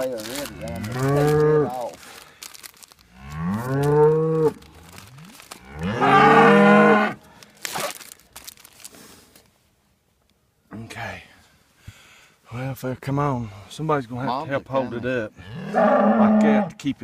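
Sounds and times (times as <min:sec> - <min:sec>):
rustle: 0:00.0 - 0:12.6.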